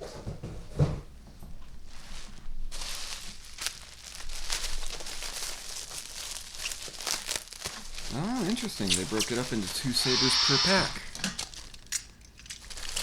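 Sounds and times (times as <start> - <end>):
packaging crinkling and rustling: 1.9 - 10.1, 11.1 - 13.0.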